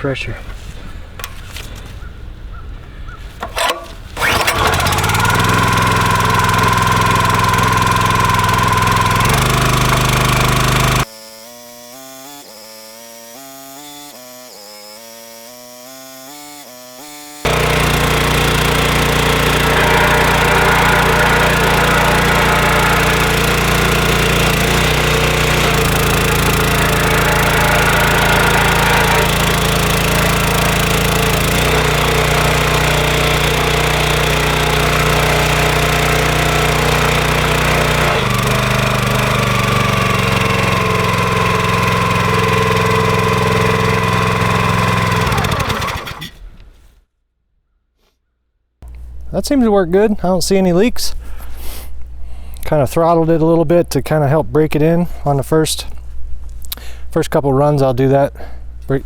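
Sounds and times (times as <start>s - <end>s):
small gas engine running: 3.4s - 46.9s.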